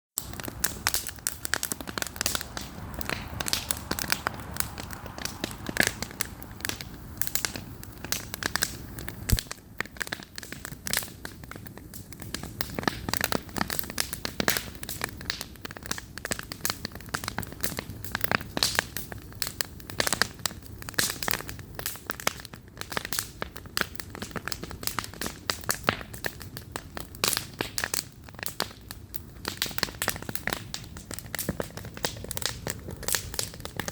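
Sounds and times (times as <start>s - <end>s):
campfire crackling and popping: 0.2s - 33.9s
low steady rumble: 0.3s - 9.2s.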